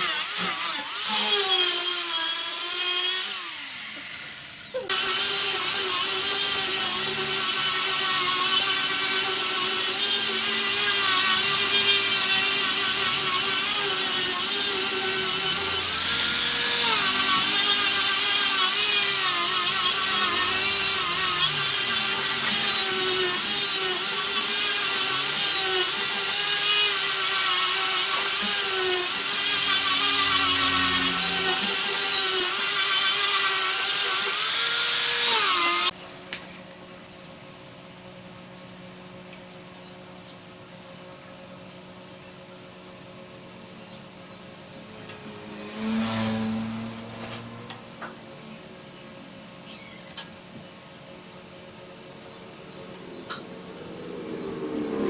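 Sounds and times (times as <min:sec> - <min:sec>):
hiss of tool cutting wood: 0:04.9 - 0:35.9
lathe motor hum: 0:05.0 - 0:35.9.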